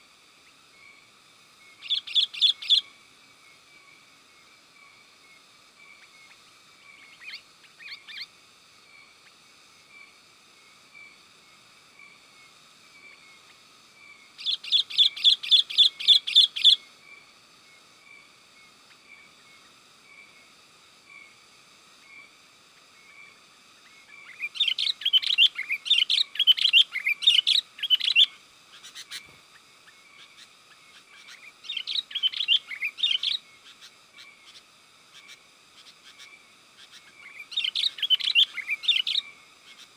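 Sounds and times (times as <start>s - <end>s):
faint repeated bird chirps: 0.0s - 39.9s
bulbul chattering: 1.7s - 2.9s, 14.2s - 16.9s, 22.8s - 39.9s.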